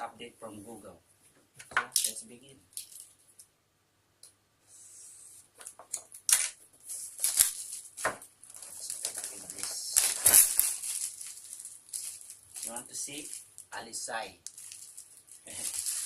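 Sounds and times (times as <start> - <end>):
packaging rustling and scraping: 6.3 - 13.6, 14.4 - 16.0.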